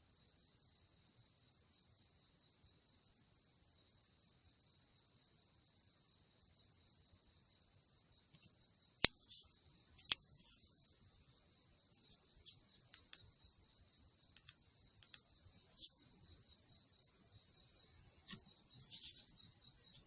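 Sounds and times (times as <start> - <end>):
high-pitched insect chorus: 0.0 - 20.0
faint ticks: 8.3 - 10.8, 11.9 - 13.6, 14.3 - 16.1, 18.1 - 20.0.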